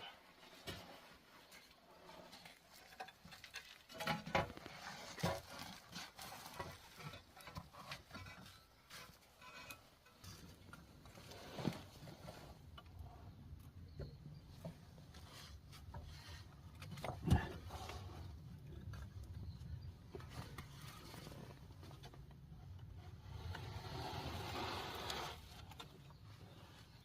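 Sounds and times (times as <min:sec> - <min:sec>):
objects knocking and scraping: 0:00.5 - 0:13.1, 0:13.8 - 0:22.5.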